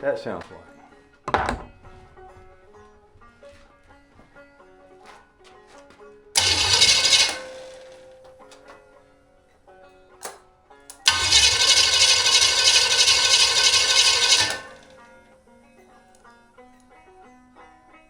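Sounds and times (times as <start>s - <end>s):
plucked-string background music: 0.0s - 18.0s
engine cranking and starting: 6.4s - 8.2s, 10.9s - 15.2s.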